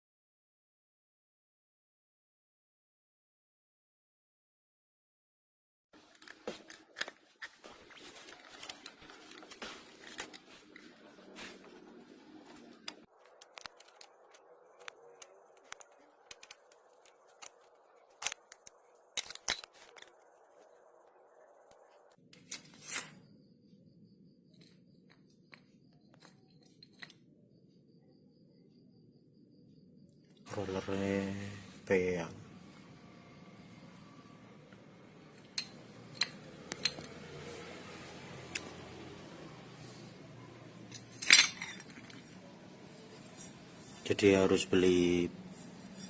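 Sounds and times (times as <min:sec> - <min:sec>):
scooter parts clicking and scraping: 0:06.0 - 0:11.4, 0:12.6 - 0:20.2, 0:35.4 - 0:37.6.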